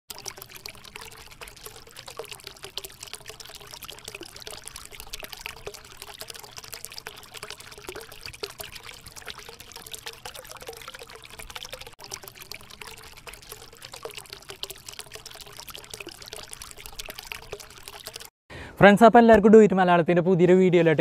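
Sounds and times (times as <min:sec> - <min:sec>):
fountain water trickling: 0:00.1 - 0:18.3.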